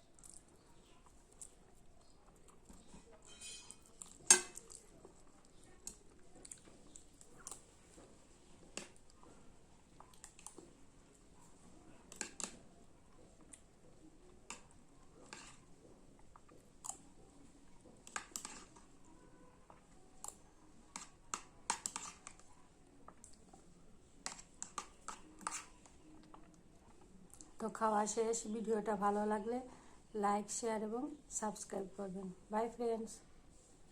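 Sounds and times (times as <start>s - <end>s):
person chewing: 0.1s - 3.2s, 3.8s - 7.8s, 10.0s - 10.7s, 16.2s - 17.1s.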